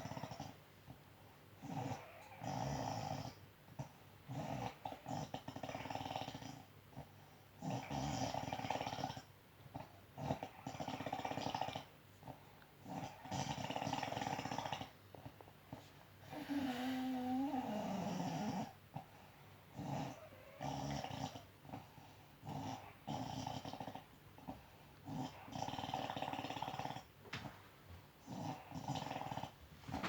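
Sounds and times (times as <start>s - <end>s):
woman snoring: 16.2s - 18.8s.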